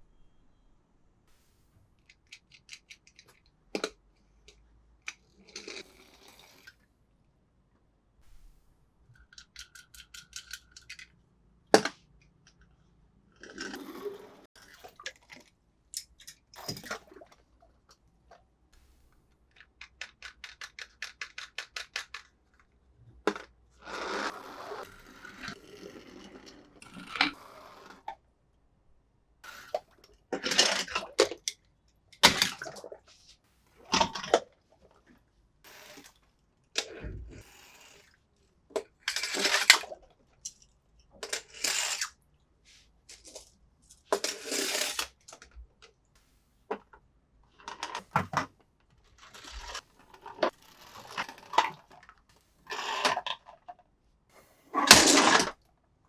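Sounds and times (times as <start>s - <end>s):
toy cars handled clicking and rattling: 2.0s - 6.8s, 9.1s - 11.2s, 13.4s - 18.0s, 19.5s - 23.6s, 36.8s - 42.2s, 43.1s - 46.0s, 54.8s - 55.6s.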